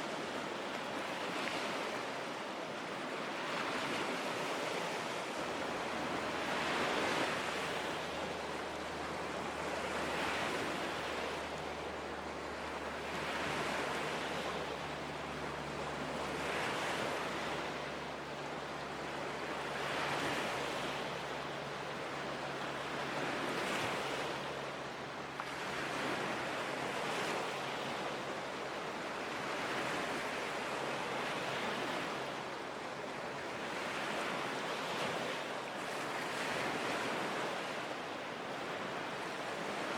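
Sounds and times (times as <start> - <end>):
lake waves washing in: 0.0 - 39.9.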